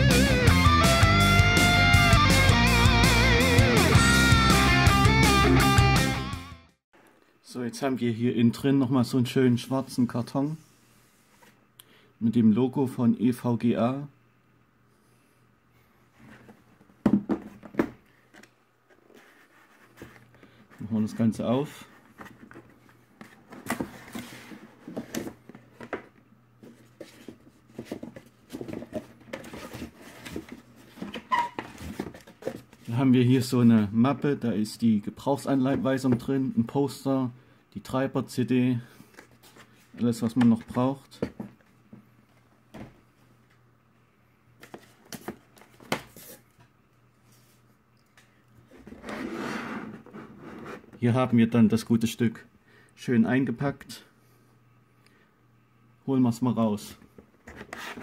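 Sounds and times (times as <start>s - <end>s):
cardboard scraping and rustling: 16.2s - 32.9s, 48.7s - 51.0s, 57.4s - 58.0s.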